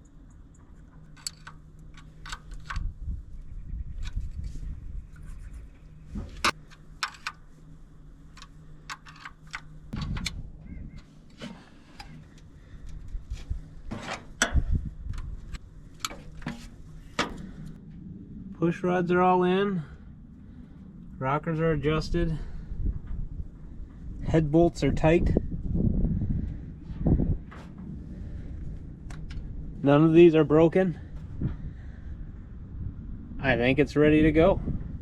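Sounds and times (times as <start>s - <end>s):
metallic clicks of hand tools: 1.2s - 2.9s.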